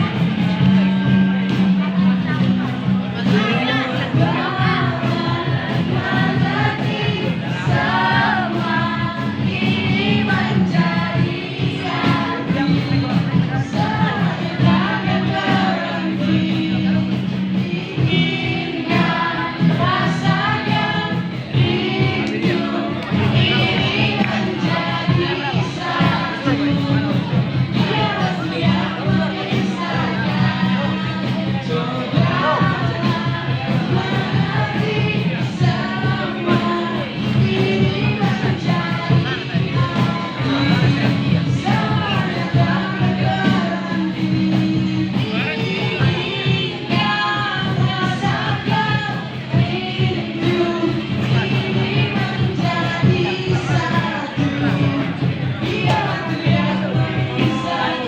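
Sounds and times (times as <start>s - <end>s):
instrumental accompaniment: 0.0s - 58.0s
voices singing: 0.0s - 58.0s.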